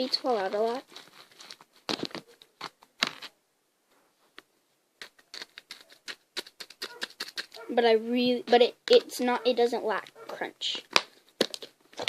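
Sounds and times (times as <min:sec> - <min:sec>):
crunchy slime crackling: 0:00.0 - 0:03.3.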